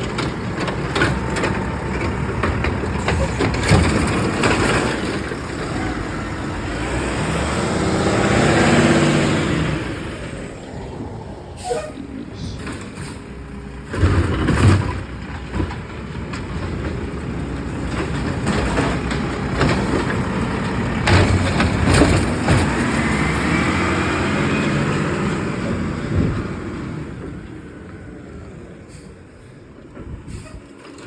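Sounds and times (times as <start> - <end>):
sharp knocks and clanks: 0.0 - 6.0, 14.0 - 23.0
garbage truck running: 0.0 - 31.0.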